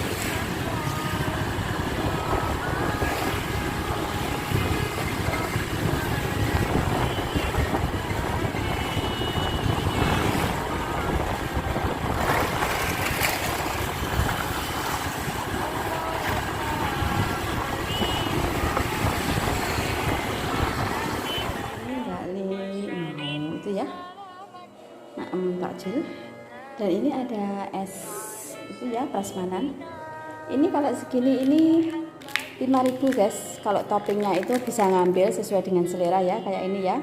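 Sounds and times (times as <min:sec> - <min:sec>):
wind rumble on microphone: 0:00.0 - 0:22.3.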